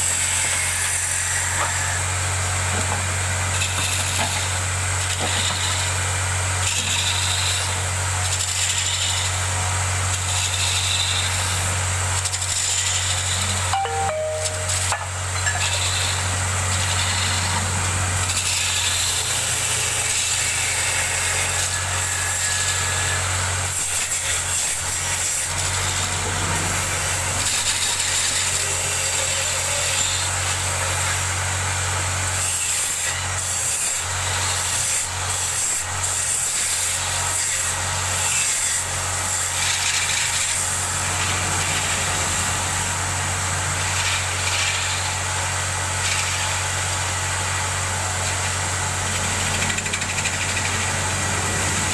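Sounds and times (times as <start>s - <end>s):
wood lathe humming: 46.8s - 51.9s.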